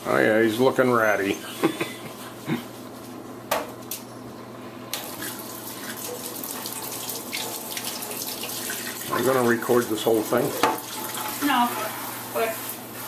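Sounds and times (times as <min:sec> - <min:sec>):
water running into sink: 0:04.9 - 0:13.0.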